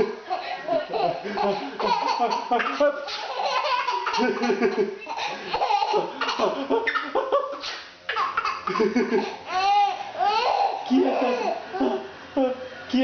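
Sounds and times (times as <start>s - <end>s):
baby laughing and squealing: 0.9s - 4.4s, 5.0s - 7.2s, 8.1s - 11.9s.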